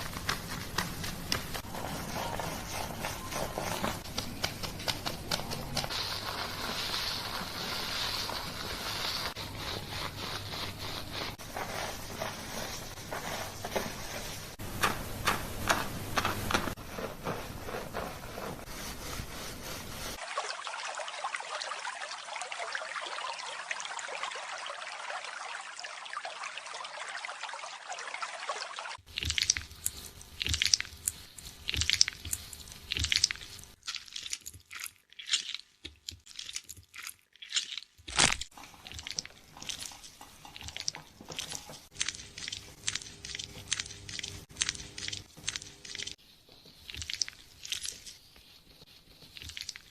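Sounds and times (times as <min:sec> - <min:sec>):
scratching strokes: 0:00.0 - 0:20.3, 0:38.5 - 0:49.9
hands scrubbing lathered hair: 0:00.0 - 0:22.3, 0:38.5 - 0:49.9.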